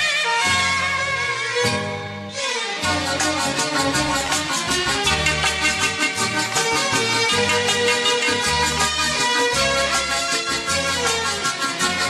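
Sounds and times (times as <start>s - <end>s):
instrumental music with percussion beat: 2.9s - 12.0s.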